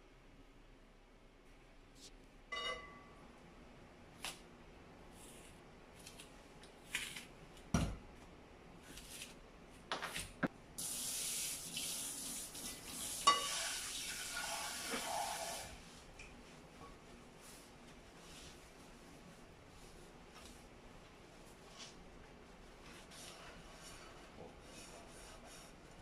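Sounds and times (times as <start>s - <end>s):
clink: 2.5s - 3.1s.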